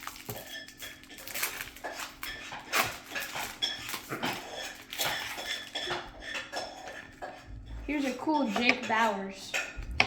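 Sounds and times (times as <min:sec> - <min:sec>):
foil wrapper crinkling and tearing: 0:00.0 - 0:05.4.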